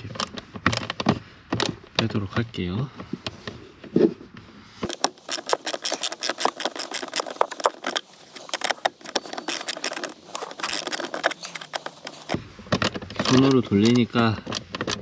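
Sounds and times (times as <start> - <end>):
hand ratchet clicking: 4.9 - 12.4.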